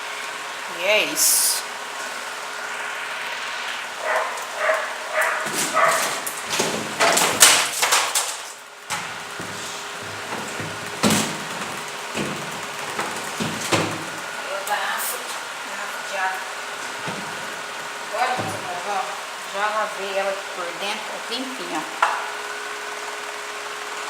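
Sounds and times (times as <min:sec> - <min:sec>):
electric fan humming: 0:00.0 - 0:24.0
dog barking: 0:04.0 - 0:06.2.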